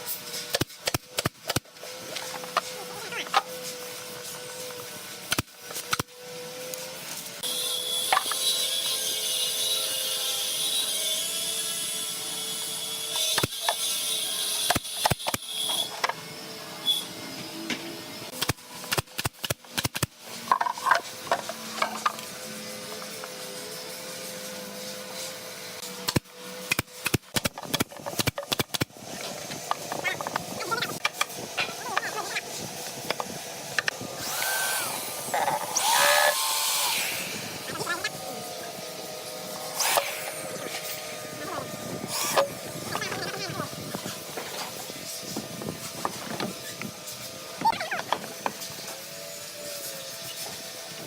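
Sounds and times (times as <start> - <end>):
power tool hissing: 32.5 - 43.2.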